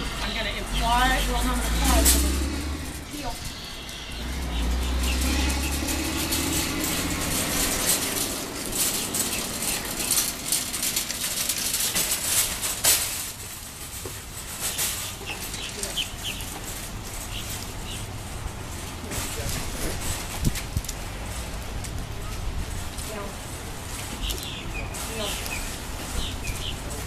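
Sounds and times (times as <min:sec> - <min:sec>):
passing car rumble: 0:00.0 - 0:13.9
crackling and rustling: 0:00.0 - 0:27.0.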